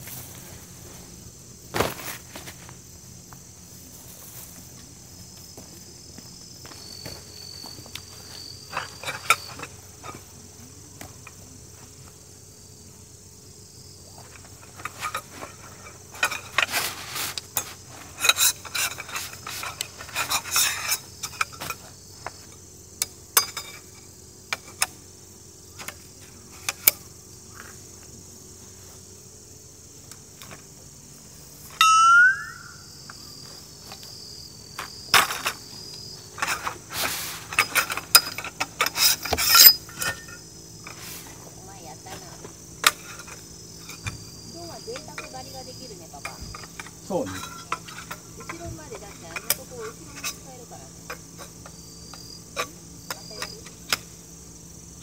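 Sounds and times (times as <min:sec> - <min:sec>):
insects chirping: 0:00.0 - 0:55.0
camping gear clicks and knocks: 0:14.2 - 0:25.0, 0:33.1 - 0:41.4
loud rising squeal: 0:31.8 - 0:32.9.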